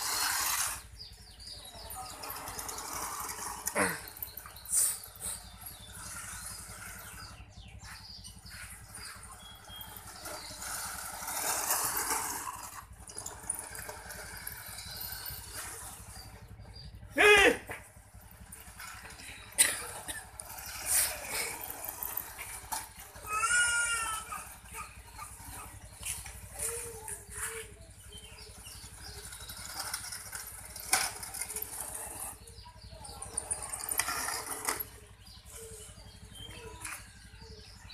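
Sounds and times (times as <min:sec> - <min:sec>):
toy car motor whirring: 0:00.0 - 0:17.4, 0:18.2 - 0:37.4
background hum: 0:00.0 - 0:37.9.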